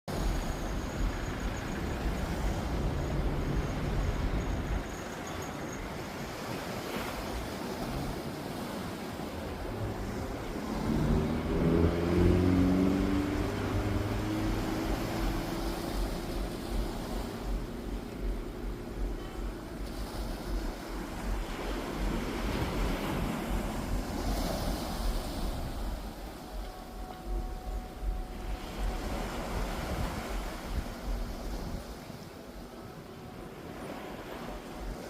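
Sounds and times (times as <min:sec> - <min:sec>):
wind buffeting microphone: 0:00.1 - 0:33.1
ocean surf washing: 0:00.1 - 0:35.0
motor engine hum: 0:09.3 - 0:32.0.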